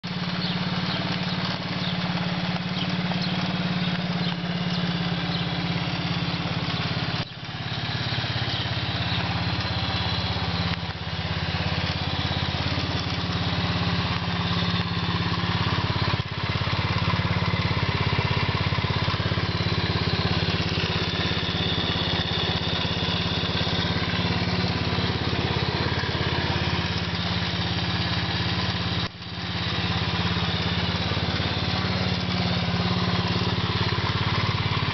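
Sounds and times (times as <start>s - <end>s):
atv engine idling: 0.0s - 34.9s.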